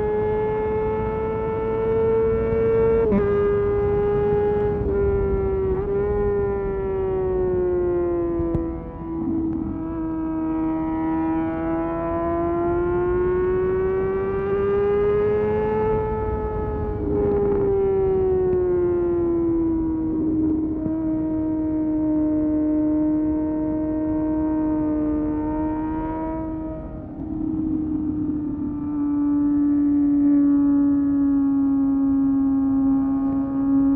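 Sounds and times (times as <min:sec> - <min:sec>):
motorcycle engine whining at high revs: 0:00.0 - 0:33.9.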